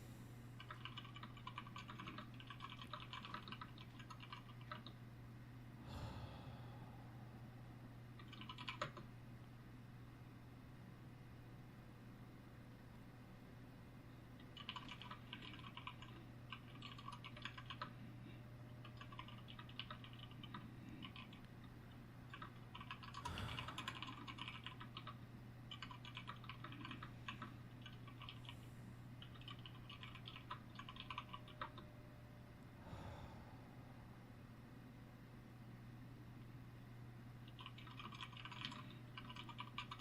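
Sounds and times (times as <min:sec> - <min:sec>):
faint steady hum: 0:00.0 - 0:40.0
typing on computer keyboard: 0:00.6 - 0:05.0, 0:08.2 - 0:09.1, 0:14.4 - 0:17.9, 0:18.8 - 0:21.5, 0:22.3 - 0:28.6, 0:29.2 - 0:31.8, 0:37.4 - 0:40.0.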